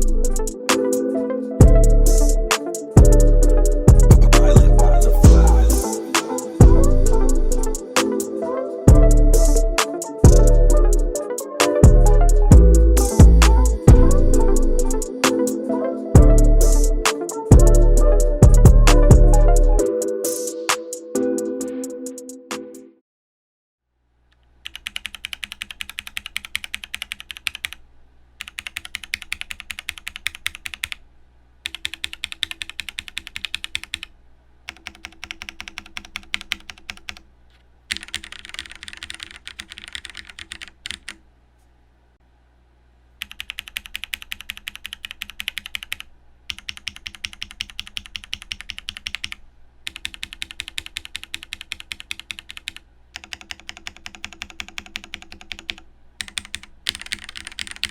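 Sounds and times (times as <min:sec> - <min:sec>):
fast typing on mechanical keyboard: 0:24.6 - 0:27.8, 0:28.4 - 0:31.0, 0:31.6 - 0:34.1, 0:34.7 - 0:37.2, 0:37.9 - 0:41.2, 0:43.2 - 0:57.9.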